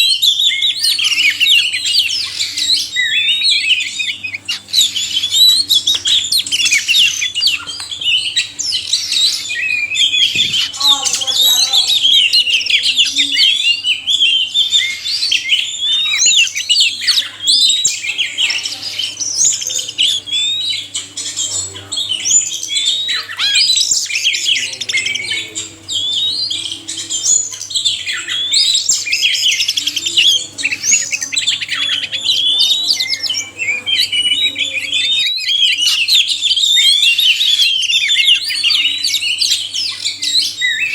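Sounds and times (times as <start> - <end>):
birds singing whistles and chirps: 0.0 - 40.9.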